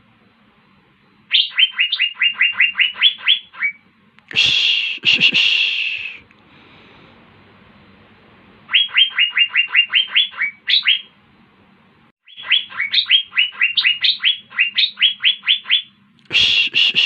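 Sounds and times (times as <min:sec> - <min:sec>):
bird singing sharp downward notes: 0:01.3 - 0:03.8, 0:08.7 - 0:11.1, 0:12.2 - 0:16.0.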